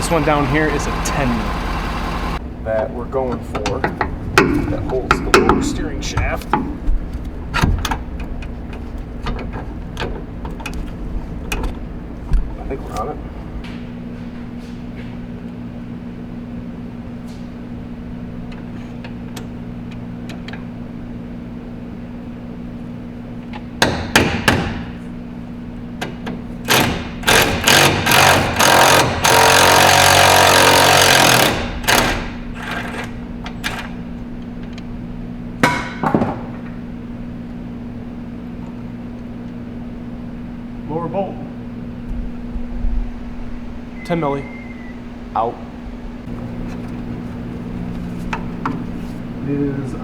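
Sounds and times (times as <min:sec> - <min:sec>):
steady low hum: 0:00.0 - 0:50.0
power tool spinning out bolt: 0:26.7 - 0:33.9.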